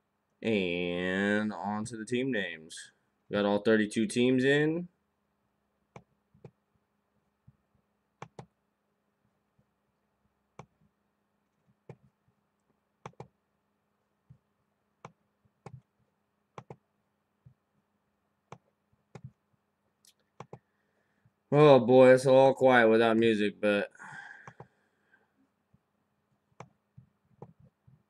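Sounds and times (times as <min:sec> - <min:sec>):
computer mouse clicks: 0:08.2 - 0:08.5, 0:13.0 - 0:13.3, 0:16.6 - 0:16.8, 0:20.1 - 0:20.7.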